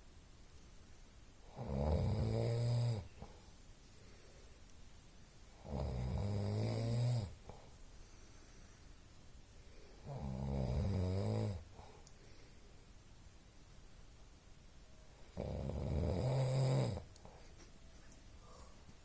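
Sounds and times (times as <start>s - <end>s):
person snoring: 1.5s - 3.1s, 5.6s - 7.4s, 10.0s - 11.6s, 15.4s - 17.1s.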